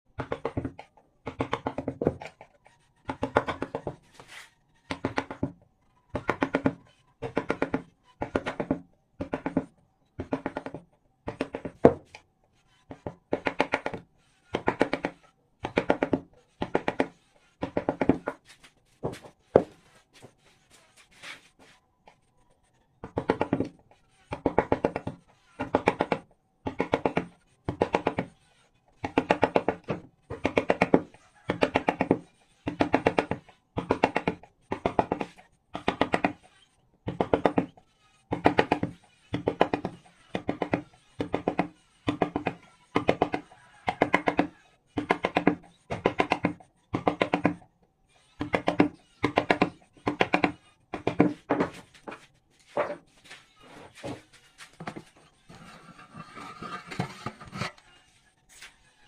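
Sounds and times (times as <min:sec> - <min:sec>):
hand tool rasping wood: 0:53.7 - 0:57.9.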